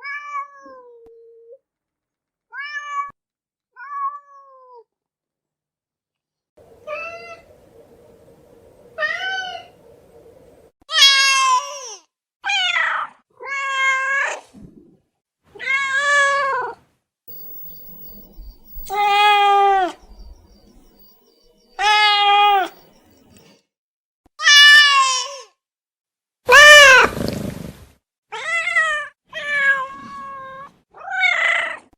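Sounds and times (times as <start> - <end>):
cat meowing: 21.8 - 22.7.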